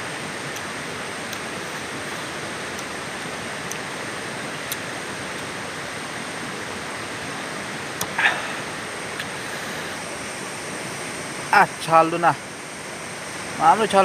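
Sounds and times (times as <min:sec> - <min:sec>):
river water rushing: 0:00.0 - 0:14.0.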